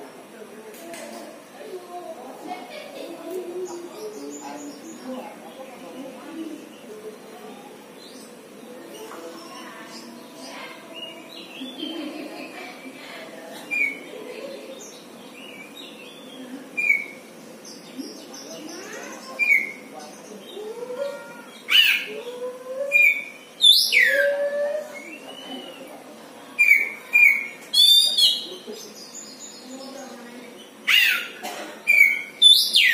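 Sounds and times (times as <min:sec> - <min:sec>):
bird chirping and calling: 0:13.6 - 0:32.9.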